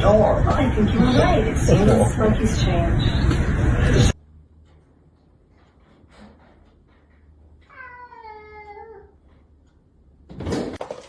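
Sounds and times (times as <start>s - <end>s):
cat meowing: 7.7s - 9.2s.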